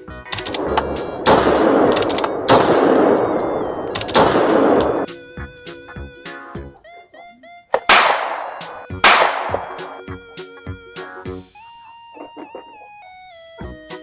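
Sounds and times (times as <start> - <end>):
background music: 0.0 - 14.0
loud gunshot blasts: 1.2 - 5.1, 7.9 - 10.0.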